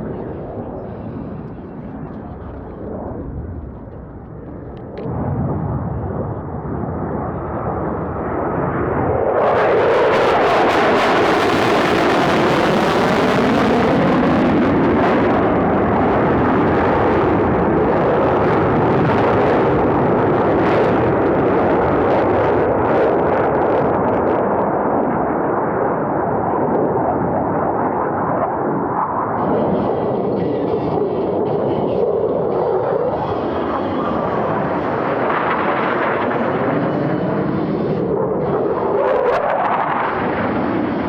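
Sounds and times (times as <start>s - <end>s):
jet engines roaring past: 0.0s - 41.0s.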